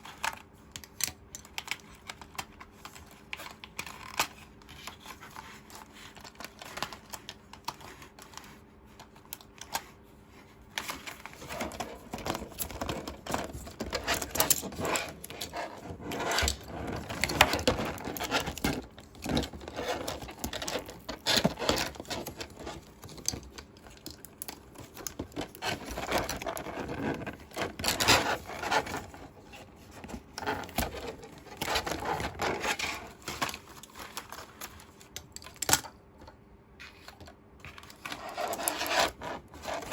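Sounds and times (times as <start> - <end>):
plastic packaging crinkling: 10.8 - 35.8.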